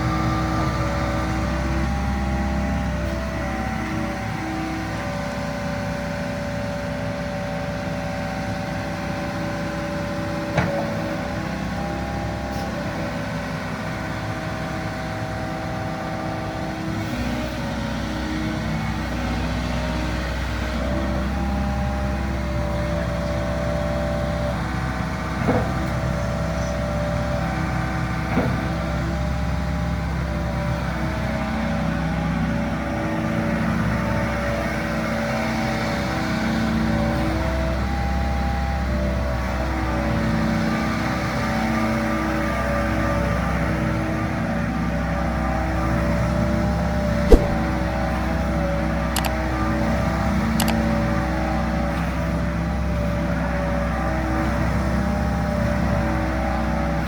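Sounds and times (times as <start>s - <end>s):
excavator diesel engine running: 0.0s - 39.7s
sharp knock: 47.3s - 47.7s.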